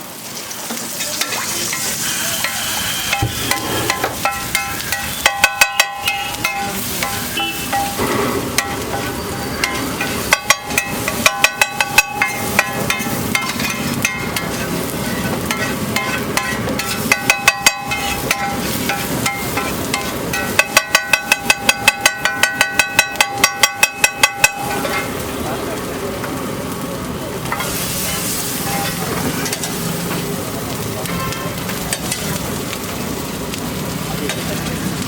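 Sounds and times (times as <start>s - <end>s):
frying sizzle: 0.0s - 35.0s
metal spatula clanging on griddle: 1.0s - 25.2s, 27.5s - 29.8s, 31.0s - 32.4s.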